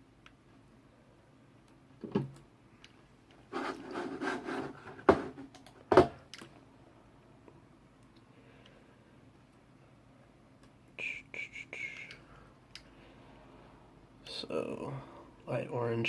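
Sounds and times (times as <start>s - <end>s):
rubbing and rustling of cable: 3.3s - 5.7s.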